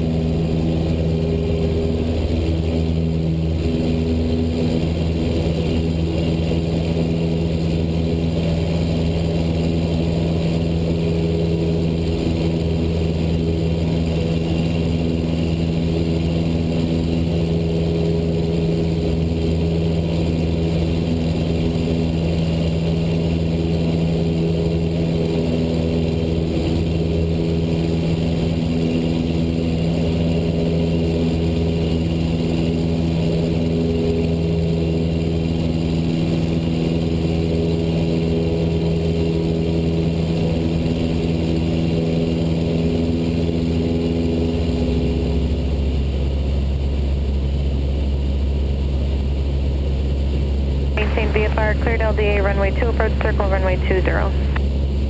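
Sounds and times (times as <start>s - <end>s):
propeller plane engine droning: 0.0s - 55.0s.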